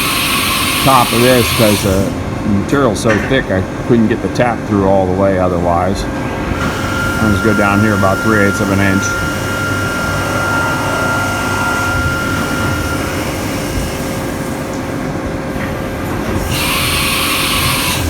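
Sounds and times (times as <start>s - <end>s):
loud hiss: 0.0s - 2.2s
milling machine drilling whine: 0.0s - 2.2s, 5.8s - 14.8s, 16.3s - 18.0s.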